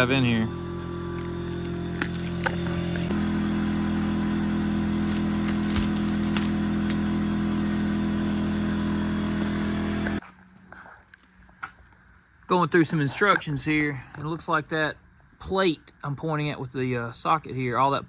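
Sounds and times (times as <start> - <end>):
engine running: 0.0 - 10.2.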